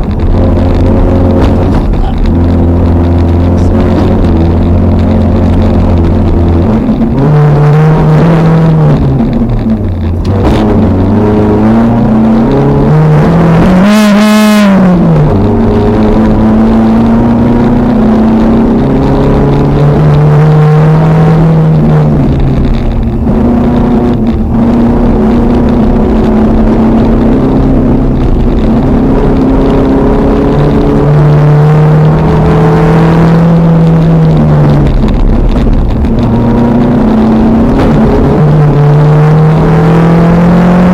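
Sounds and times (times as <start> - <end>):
car engine revving from cabin: 0.1 - 40.9.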